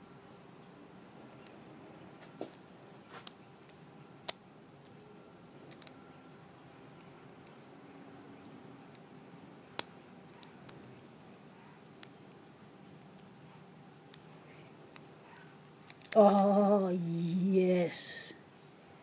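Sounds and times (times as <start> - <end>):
lock pick metallic clicks: 5.7 - 6.0, 15.8 - 16.2.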